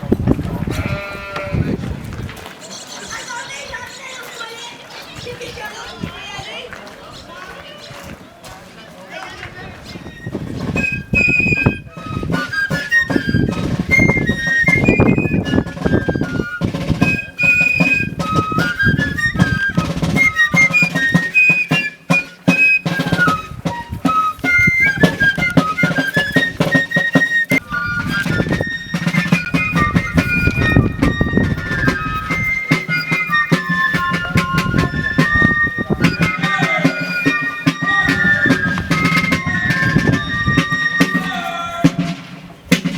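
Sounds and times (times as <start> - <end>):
drumbeats: 9.5 - 42.9
fife melody: 9.8 - 42.9.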